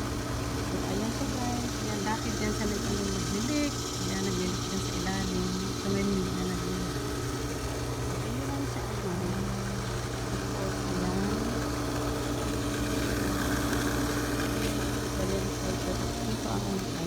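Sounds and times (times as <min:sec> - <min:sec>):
pool pump motor humming: 0:00.0 - 0:17.0.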